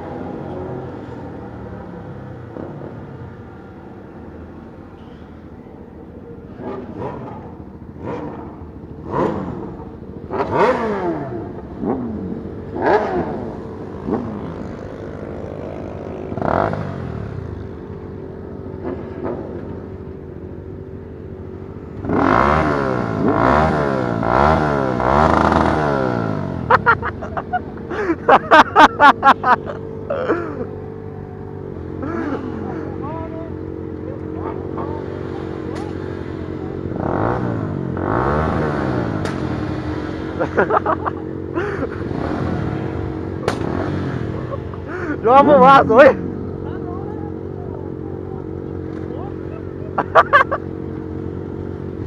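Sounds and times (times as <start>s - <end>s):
motorcycle engines revving: 0.0s - 52.0s
loud exhaust pops: 39.1s - 39.8s, 43.4s - 44.0s.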